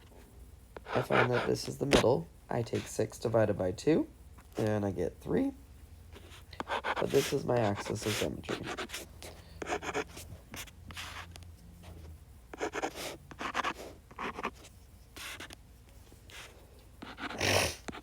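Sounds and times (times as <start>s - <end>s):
scratchy writing strokes: 0.8s - 2.0s, 6.1s - 18.0s.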